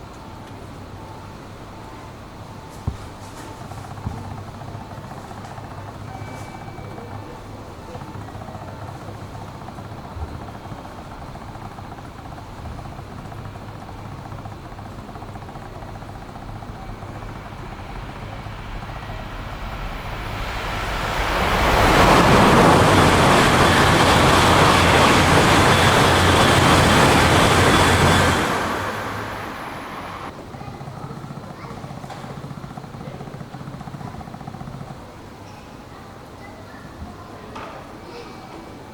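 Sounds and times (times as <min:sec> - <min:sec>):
train passing: 0:00.0 - 0:30.6.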